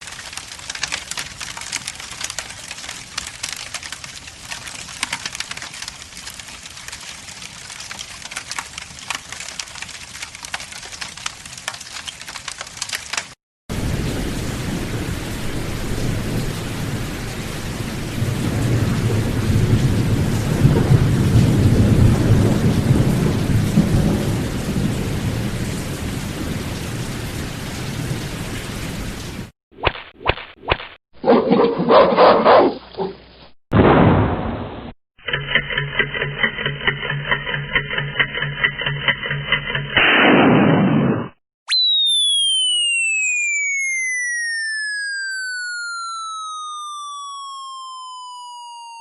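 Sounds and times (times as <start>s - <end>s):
fire crackling: 0.0s - 14.8s
heavy rain: 0.0s - 29.5s
thunder rumbling: 13.7s - 29.4s.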